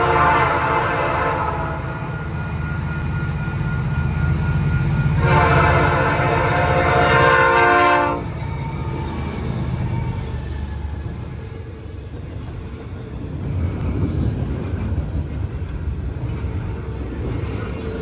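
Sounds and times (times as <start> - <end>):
locomotive air horn: 0.0 - 2.1, 5.2 - 9.1
diesel locomotive rumble: 0.0 - 18.0.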